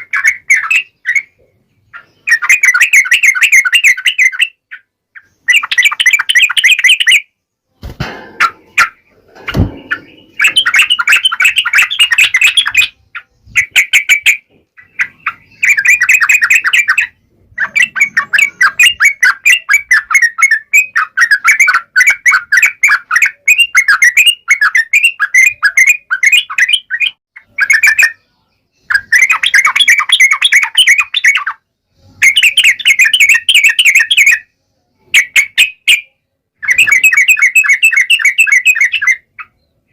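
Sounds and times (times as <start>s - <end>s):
bulbul chattering song: 0.0s - 39.9s
low bumps: 7.9s - 11.0s.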